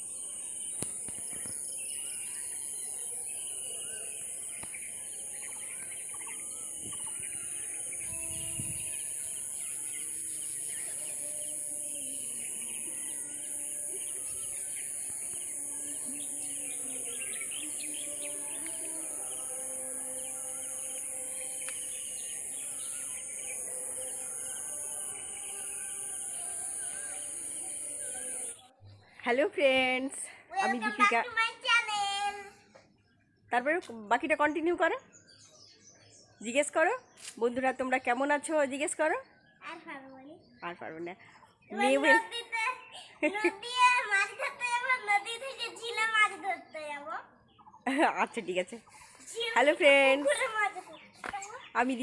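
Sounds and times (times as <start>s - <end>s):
birds chirping and calling: 0.0s - 52.0s
high-pitched insect buzz: 0.1s - 28.7s.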